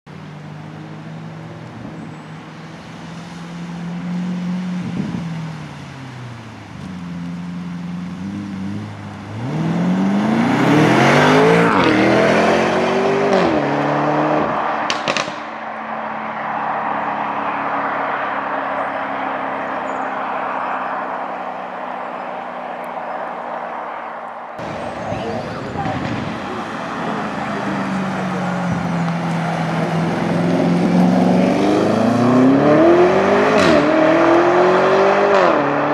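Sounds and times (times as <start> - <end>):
car engine accelerating: 0.1 - 35.9
exhaust crackles: 0.2 - 15.9, 16.7 - 34.9
steady rushing noise: 22.8 - 34.5.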